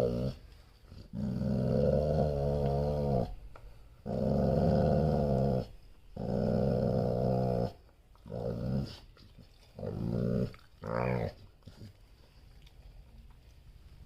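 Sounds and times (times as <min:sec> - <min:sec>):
dog growling deeply: 0:00.0 - 0:03.4, 0:04.0 - 0:09.0, 0:09.8 - 0:11.4.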